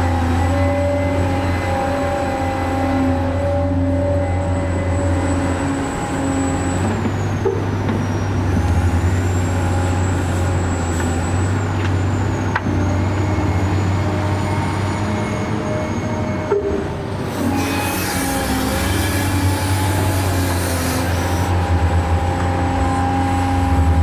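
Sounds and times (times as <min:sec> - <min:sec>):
model excavator motor whine: 0:00.0 - 0:07.3.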